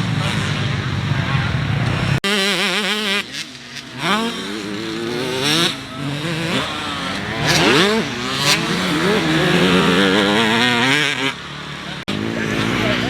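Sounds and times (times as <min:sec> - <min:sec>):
motocross bike engines revving: 0:00.0 - 0:13.0.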